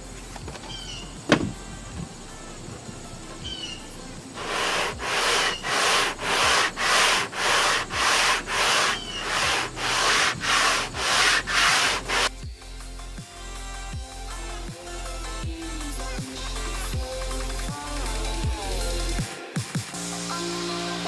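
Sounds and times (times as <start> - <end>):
hand sanding strokes: 4.3 - 12.3.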